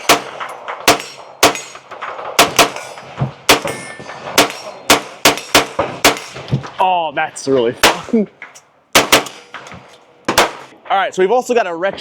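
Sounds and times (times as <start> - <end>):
rimfire gunshots: 0.0 - 6.8, 7.8 - 8.2, 8.9 - 10.8
steel targets pinging: 0.0 - 10.8.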